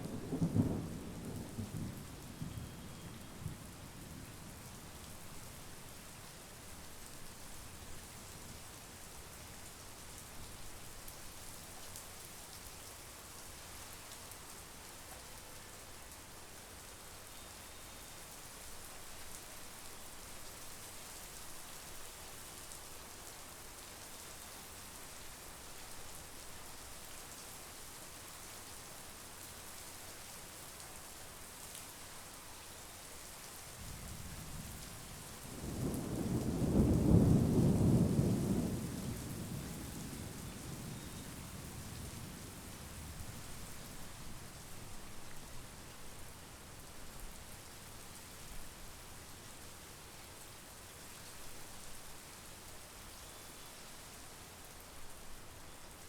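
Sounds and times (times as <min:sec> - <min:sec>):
steady rain falling: 0:00.0 - 0:56.0
rolling thunder: 0:35.4 - 0:43.2.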